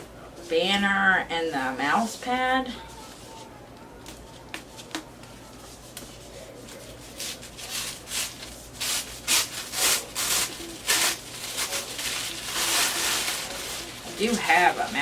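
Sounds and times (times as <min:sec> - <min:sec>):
packaging rustling and crinkling: 0:04.1 - 0:15.0.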